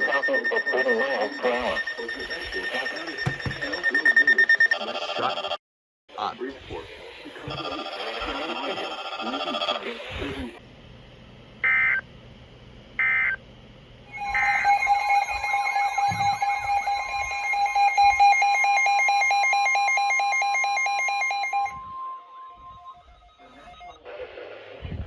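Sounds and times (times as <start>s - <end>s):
two-pitch attention tone: 0.0s - 4.4s, 14.1s - 19.2s
warbling alarm tones: 0.0s - 5.5s, 14.1s - 24.0s
digital data beeps: 0.0s - 5.6s, 14.1s - 24.0s.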